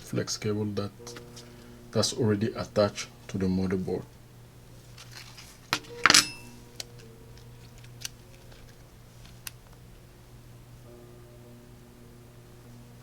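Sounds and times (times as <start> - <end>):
metal tools clicking and tapping: 5.7 - 7.1
ringing metal clatter: 5.8 - 6.6.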